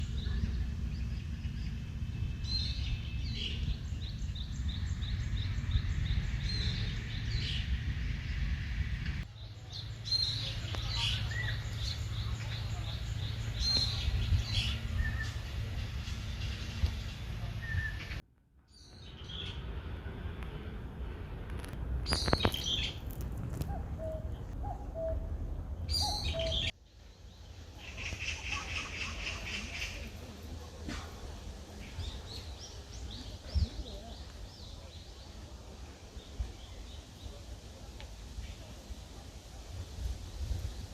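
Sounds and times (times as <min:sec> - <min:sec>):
birds chirping: 0:00.0 - 0:19.8, 0:22.0 - 0:39.0
low outdoor rumble: 0:00.0 - 0:40.9
bird hooting call: 0:23.6 - 0:25.3, 0:25.9 - 0:26.7
high bird chirp: 0:25.9 - 0:26.7.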